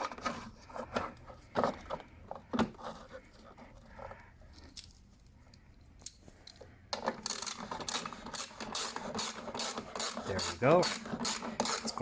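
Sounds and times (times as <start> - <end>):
ratchet wrench clicking: 7.2 - 12.0.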